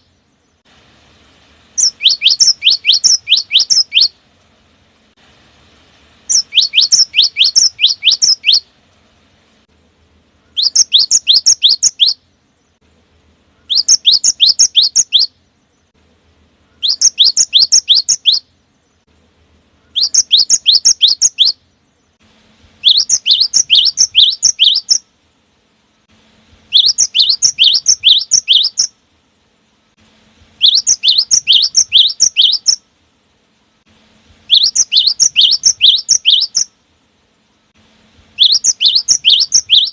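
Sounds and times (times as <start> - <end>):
bird whistling song: 1.8 - 4.2, 6.3 - 8.7, 10.4 - 12.8, 13.5 - 15.9, 16.7 - 19.0, 19.8 - 22.2, 22.8 - 25.1, 26.7 - 29.0, 30.6 - 32.8, 34.4 - 36.8, 38.3 - 39.9.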